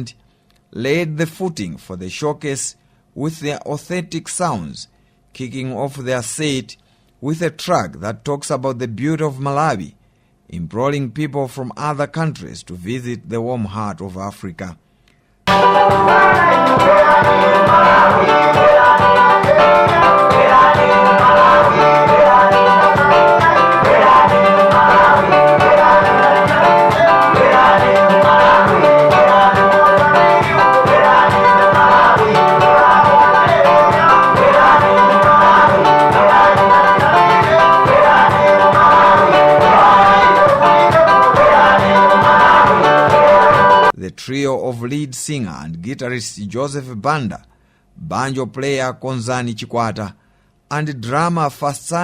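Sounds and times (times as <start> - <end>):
acoustic band playing: 15.5 - 43.9
banjo strumming: 15.5 - 43.9
drums: 15.5 - 43.9
guitar strumming: 15.5 - 43.9
person singing: 15.5 - 43.9.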